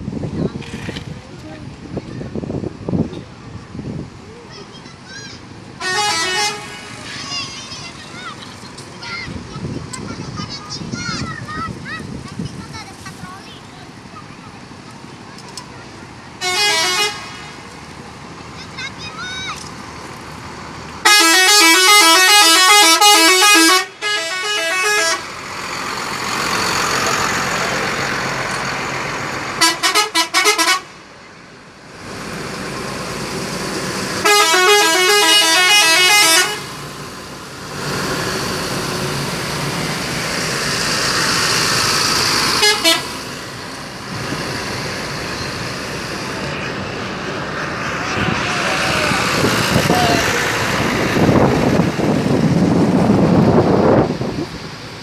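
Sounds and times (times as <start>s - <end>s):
steady vehicle noise: 0.0s - 55.0s
multi-tone musical bus horn: 5.8s - 7.6s, 16.4s - 17.6s, 21.0s - 25.4s, 29.6s - 31.0s, 34.2s - 36.8s, 42.5s - 43.2s.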